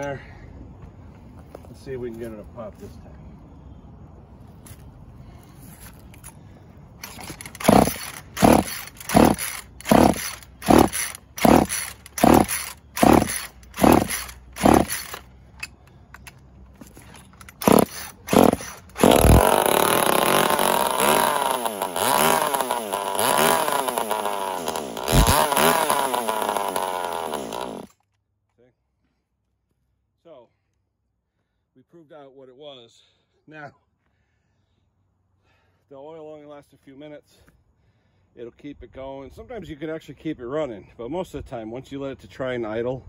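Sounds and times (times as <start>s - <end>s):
chainsaw engine revving: 7.0s - 15.3s, 17.5s - 28.0s
starter cord pulls: 7.0s - 28.0s.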